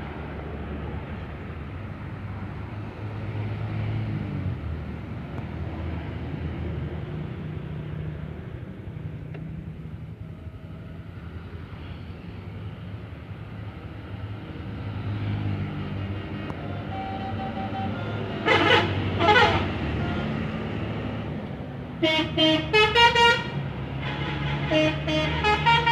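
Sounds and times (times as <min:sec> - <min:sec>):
horn blasts: 0:16.8 - 0:20.5, 0:22.0 - 0:25.9.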